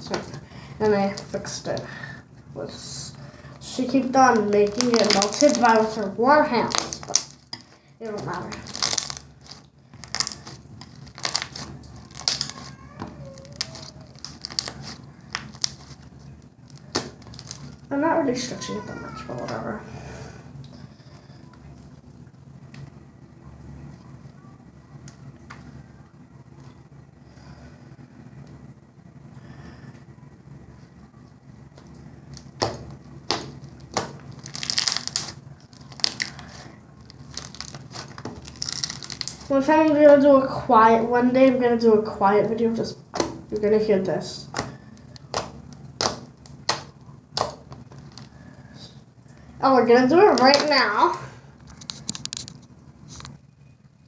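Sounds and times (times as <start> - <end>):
slime squished by hand: 4.2 - 17.9, 32.3 - 39.6, 44.4 - 48.4.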